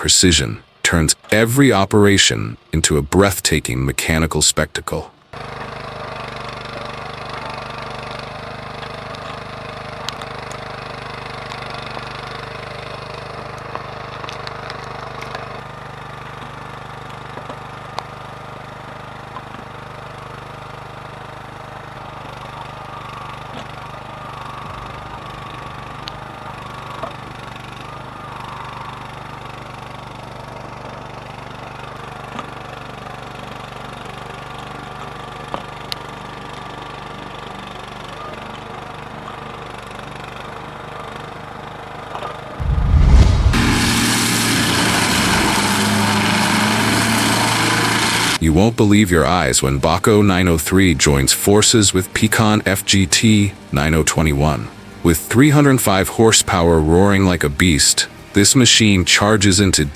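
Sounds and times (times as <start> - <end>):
machine engine running: 42.6 - 48.4.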